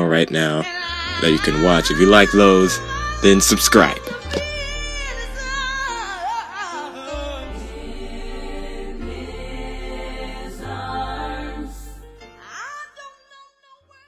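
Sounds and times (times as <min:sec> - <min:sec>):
music with singing: 0:00.1 - 0:14.0
low bass line: 0:01.1 - 0:06.4, 0:07.2 - 0:12.2.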